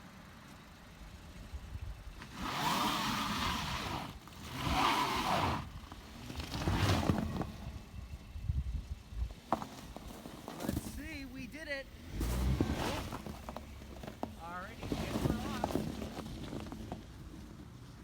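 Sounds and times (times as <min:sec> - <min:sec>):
wheels spinning in snow: 0:00.2 - 0:18.0
car engine revving: 0:02.1 - 0:08.3, 0:10.4 - 0:17.2.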